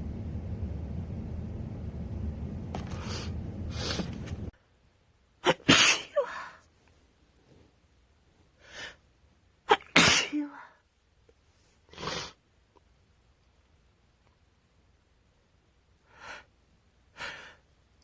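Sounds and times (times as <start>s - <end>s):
low steady hum: 0.0s - 5.4s
sniff: 2.9s - 4.2s, 11.9s - 12.4s
woman sneezing: 5.4s - 6.6s, 9.7s - 10.8s
faint breathy sounds: 8.4s - 9.1s, 16.0s - 17.8s.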